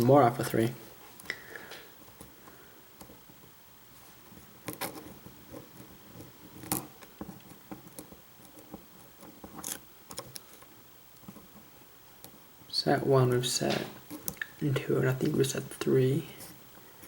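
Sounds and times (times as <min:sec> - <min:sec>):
lock pick scraping metal: 0:09.5 - 0:10.3.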